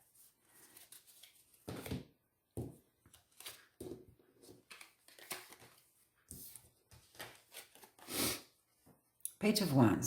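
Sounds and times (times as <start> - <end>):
cards slapping and rustling: 0.5 - 8.2.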